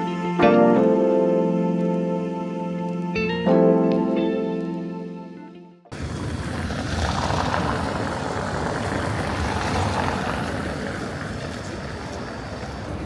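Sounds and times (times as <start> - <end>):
city street noise: 0.0 - 5.0, 5.9 - 13.0
piano chord: 0.0 - 5.9.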